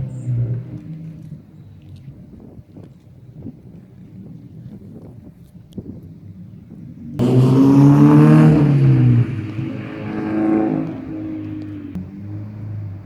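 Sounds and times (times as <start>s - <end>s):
car engine starting and idling: 0.0s - 2.3s, 6.5s - 13.0s.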